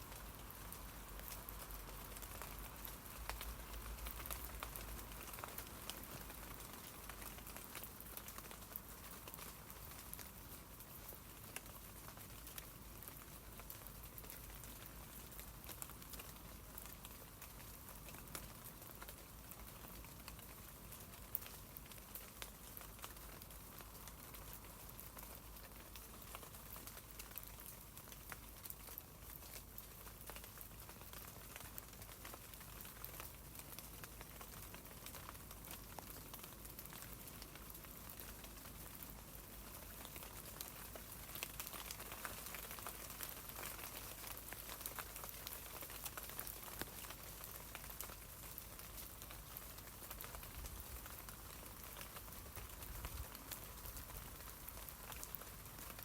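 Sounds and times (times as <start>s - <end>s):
rain pattering on leaves: 0.0s - 56.0s.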